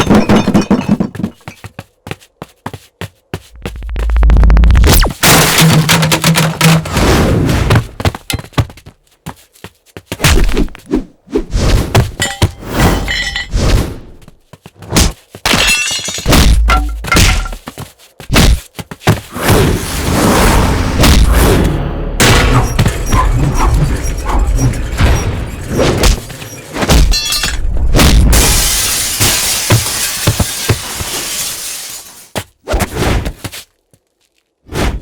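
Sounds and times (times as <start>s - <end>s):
deep low booms: 3.6s - 5.0s
crashing and breaking sounds: 4.8s - 8.4s, 15.5s - 17.7s, 19.4s - 32.6s
heavy thuds and impacts: 16.2s - 17.7s, 18.3s - 19.3s, 20.9s - 27.2s.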